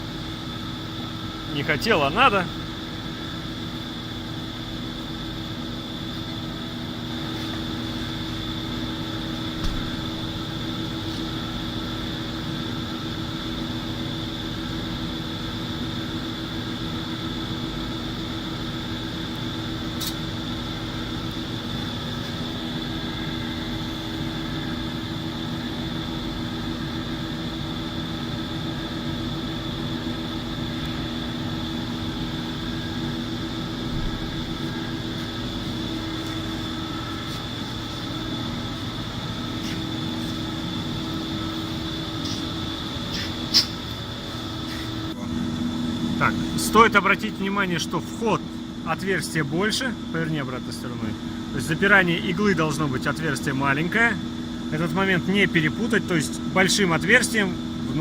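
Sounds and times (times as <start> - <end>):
machinery hum with pitched tones: 0.0 - 58.0
sharp click: 20.0 - 20.2.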